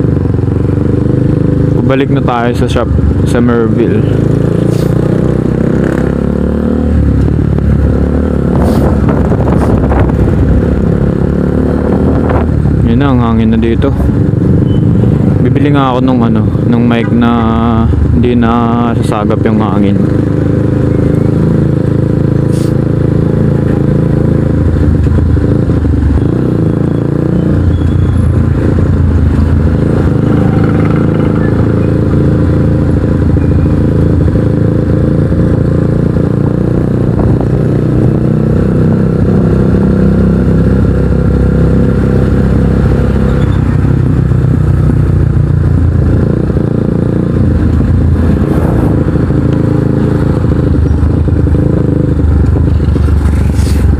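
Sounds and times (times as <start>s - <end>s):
motorcycle engine: 0.0s - 53.9s
wind noise on microphone: 6.9s - 12.9s, 36.5s - 39.9s, 43.1s - 53.9s.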